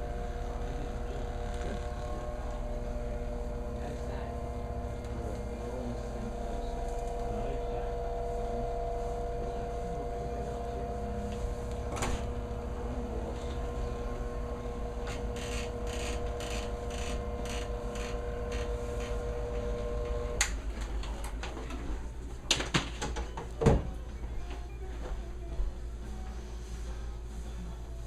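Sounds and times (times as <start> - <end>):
massage machine motor hum: 0.0 - 22.3.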